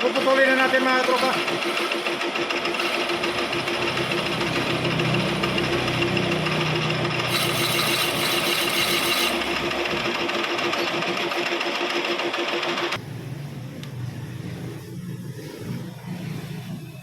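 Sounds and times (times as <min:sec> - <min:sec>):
lathe running: 0:00.0 - 0:13.0.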